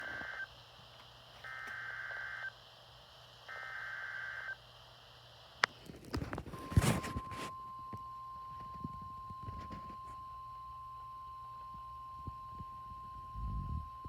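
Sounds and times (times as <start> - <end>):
digital data tone bursts: 1.5 - 2.6, 3.5 - 4.6.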